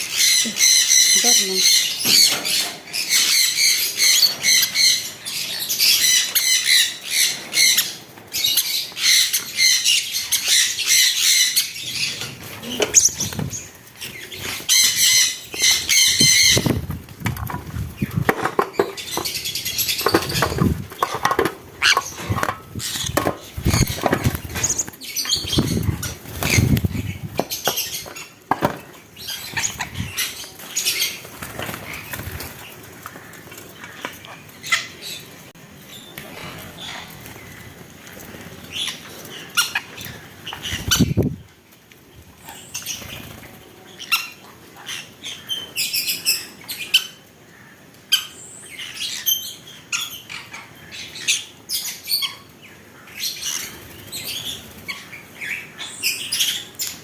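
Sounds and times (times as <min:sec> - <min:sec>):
birds squawking: 0:00.0 - 0:35.5, 0:36.7 - 0:41.4
wings flapping and rustling: 0:01.2 - 0:47.0, 0:53.5 - 0:57.0.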